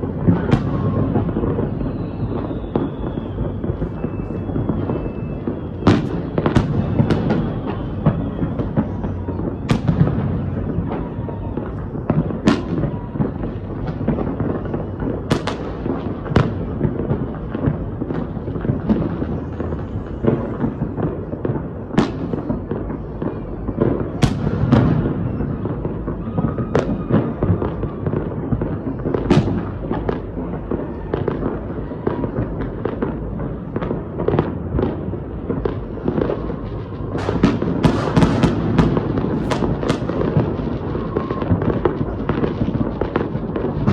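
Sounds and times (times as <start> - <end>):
fireworks crackling: 0.0 - 43.9
fireworks low booms: 0.0 - 43.9
fireworks sharp cracks: 0.0 - 43.9.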